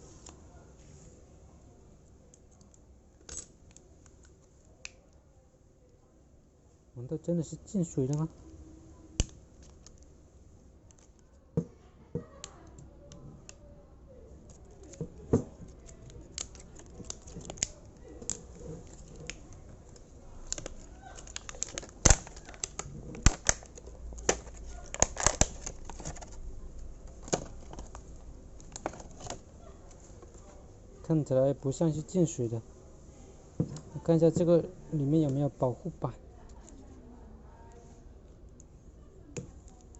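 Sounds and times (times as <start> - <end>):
battery casing cut and pried open: 15.7 - 19.5, 20.4 - 26.2.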